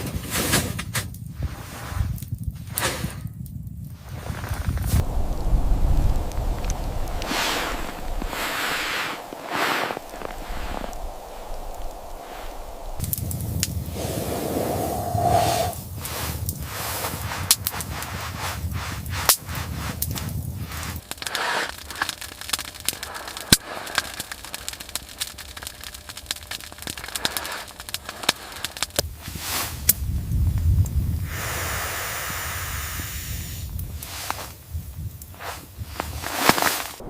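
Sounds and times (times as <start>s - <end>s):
wood fire crackling in a stove: 0.0s - 32.3s, 33.4s - 37.0s
low rushing noise: 4.4s - 16.4s
hiss: 4.8s - 37.0s.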